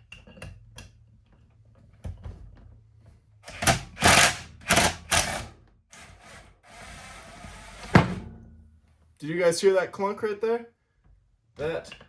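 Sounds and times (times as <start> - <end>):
impact driver hammering: 3.4 - 5.5.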